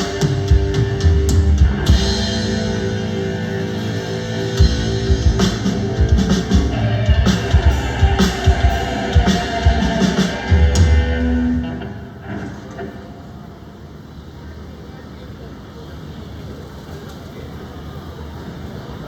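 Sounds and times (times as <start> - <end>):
live rock band: 0.0 - 13.0
drum hits: 4.6 - 11.9.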